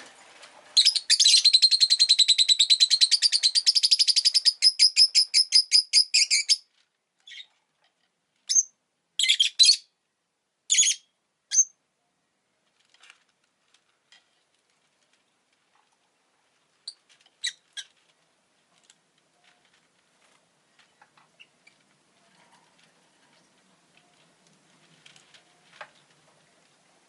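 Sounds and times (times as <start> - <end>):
lovebird chirps: 0.8 - 6.6, 7.2 - 7.5, 8.5 - 9.9, 10.7 - 11.8.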